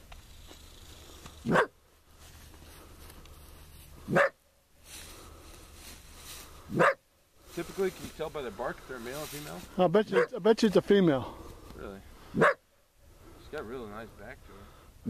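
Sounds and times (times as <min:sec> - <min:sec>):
coyote barking: 0:01.4 - 0:01.8, 0:04.0 - 0:04.5, 0:06.7 - 0:07.1, 0:10.0 - 0:10.5, 0:12.2 - 0:12.9.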